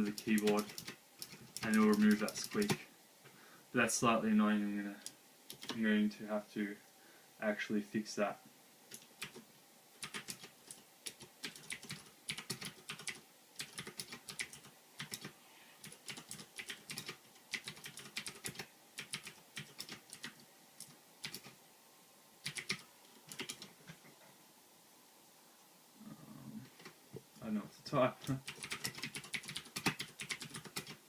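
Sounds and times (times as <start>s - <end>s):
clicky mechanical keyboard typing: 0.0s - 2.8s, 5.5s - 5.8s, 10.0s - 21.6s, 22.4s - 23.7s, 28.2s - 31.0s.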